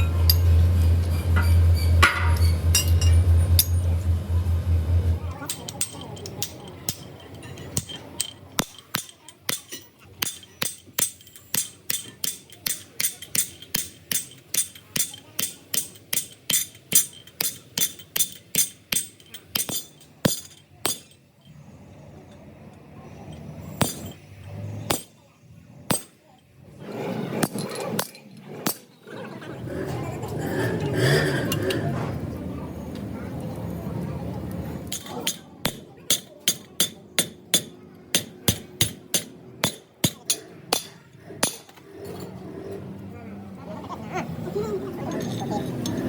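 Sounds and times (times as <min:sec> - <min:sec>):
hammer striking metal: 0:00.0 - 0:03.9, 0:05.5 - 0:21.3, 0:23.8 - 0:24.2, 0:24.9 - 0:25.2, 0:25.9 - 0:26.2, 0:34.9 - 0:41.8.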